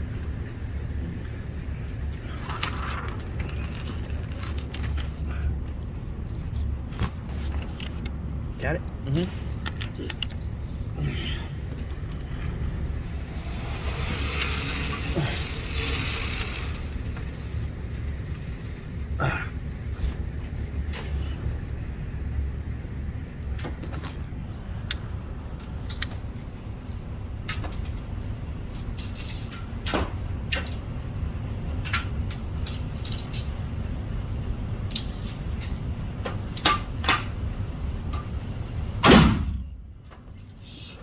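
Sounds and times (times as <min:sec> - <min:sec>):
low rumble: 0:00.0 - 0:25.8
loud gunshot: 0:39.0 - 0:39.7.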